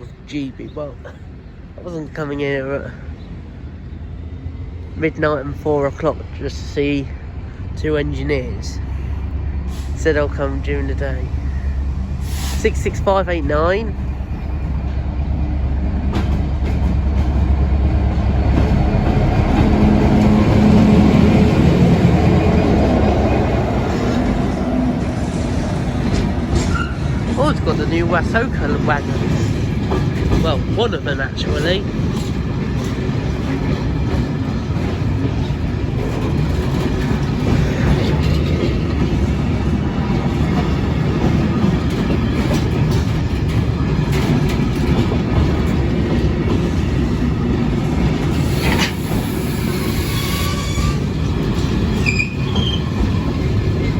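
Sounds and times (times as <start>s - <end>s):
freight train rumbling past: 0.0s - 53.9s
locomotive engine drone: 0.0s - 53.9s
wheels clacking over rail joints: 16.0s - 53.9s.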